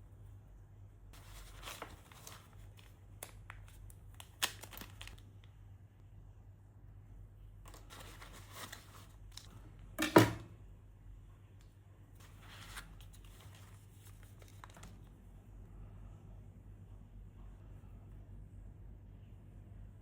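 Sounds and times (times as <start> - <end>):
packaging crinkling and tearing: 1.2 - 5.2, 7.7 - 9.5, 12.6 - 15.1.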